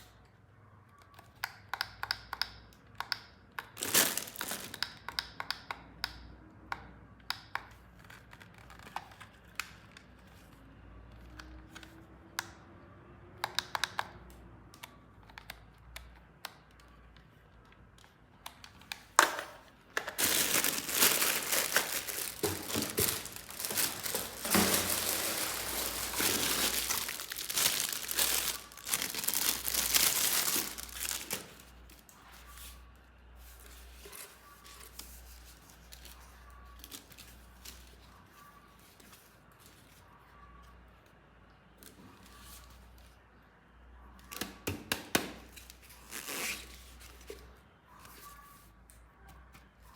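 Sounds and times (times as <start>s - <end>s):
plastic packaging crinkling: 3.8s - 4.8s, 19.8s - 32.2s.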